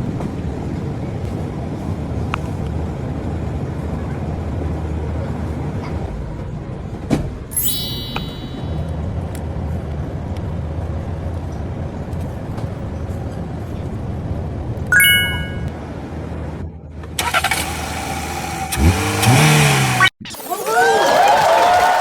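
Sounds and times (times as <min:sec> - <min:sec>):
short high ringing tone: 0:07.6 - 0:08.9, 0:14.9 - 0:15.7.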